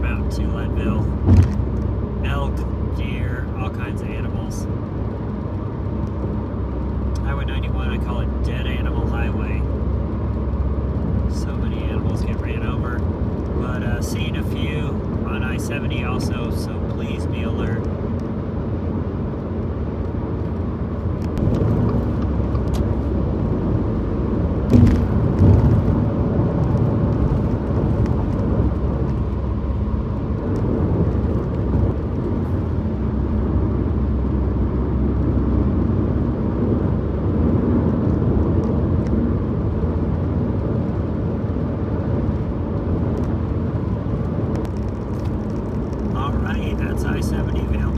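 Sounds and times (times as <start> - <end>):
tyre and engine rumble: 0.0 - 47.9
car thumps: 1.1 - 1.8, 24.7 - 26.1.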